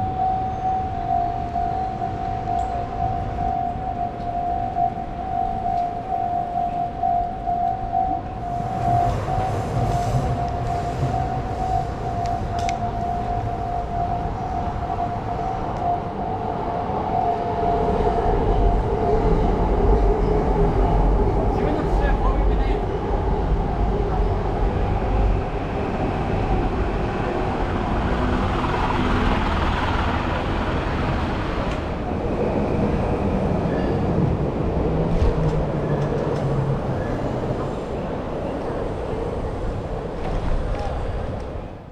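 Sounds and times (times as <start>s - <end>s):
level-crossing warning bell: 0.0s - 22.4s
low rumble of passing train: 0.0s - 41.9s.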